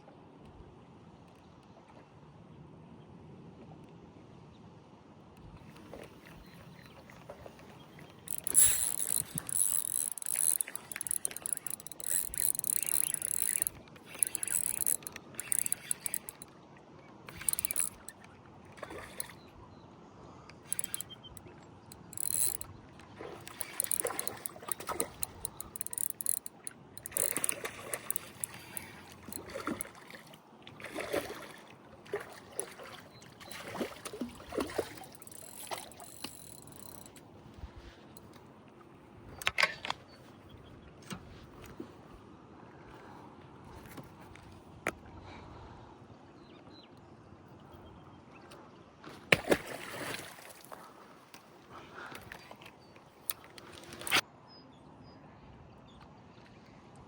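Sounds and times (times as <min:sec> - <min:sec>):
fishing reel ticking: 0:07.6 - 0:16.5, 0:17.3 - 0:18.2, 0:20.6 - 0:21.2, 0:21.9 - 0:22.7, 0:23.4 - 0:29.9, 0:35.0 - 0:37.2.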